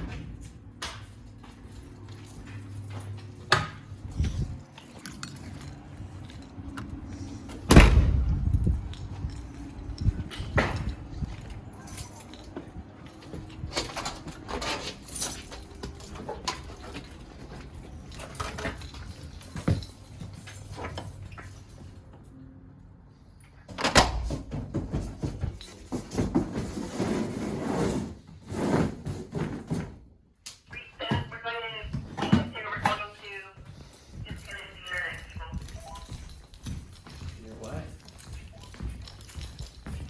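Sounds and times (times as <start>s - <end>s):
knocks clicks and rattles of handling: 8.4s - 21.7s.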